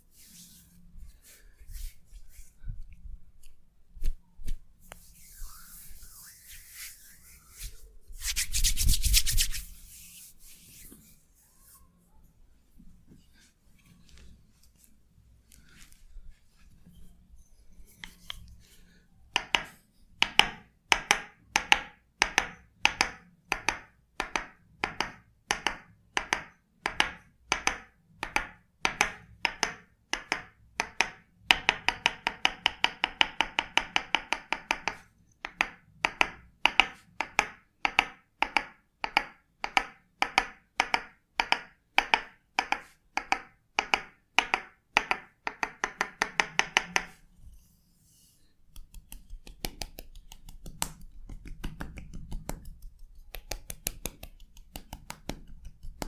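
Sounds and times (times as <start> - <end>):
percussive massage tapping: 19.4 - 47.2, 48.7 - 56.0.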